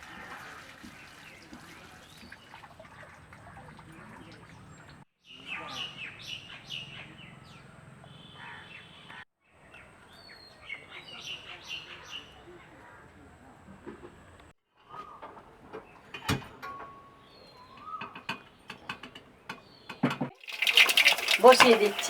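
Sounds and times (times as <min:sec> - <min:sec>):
small birds chirping: 0:00.9 - 0:13.2.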